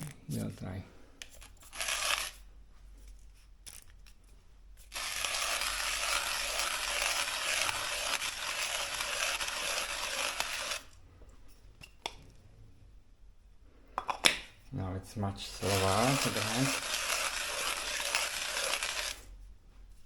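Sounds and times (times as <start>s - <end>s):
manual coffee grinder grinding: 1.2s - 2.5s, 4.8s - 11.0s, 15.4s - 19.4s.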